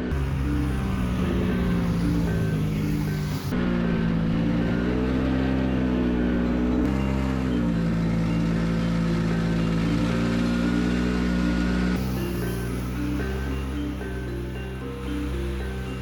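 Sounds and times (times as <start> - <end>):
snowmobile engine running: 0.0 - 16.0.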